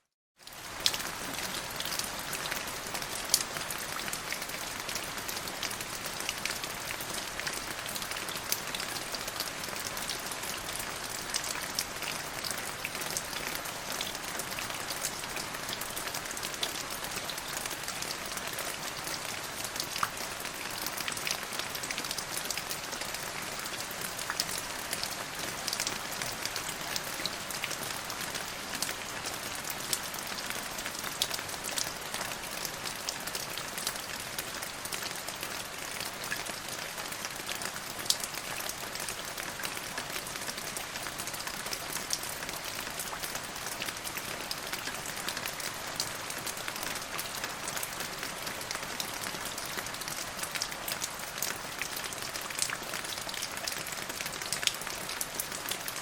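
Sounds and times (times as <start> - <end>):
steady rain: 0.4 - 56.0.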